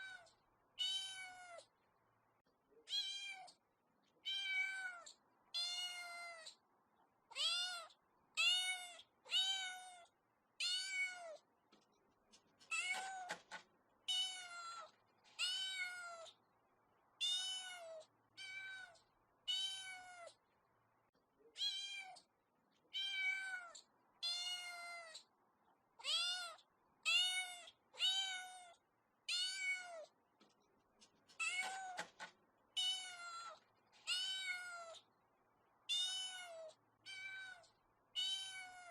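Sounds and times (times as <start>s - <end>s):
kitten meowing: 2.8s - 3.6s, 4.2s - 6.6s, 7.3s - 11.4s, 14.1s - 16.4s, 26.0s - 30.1s, 32.8s - 35.0s, 35.9s - 38.9s.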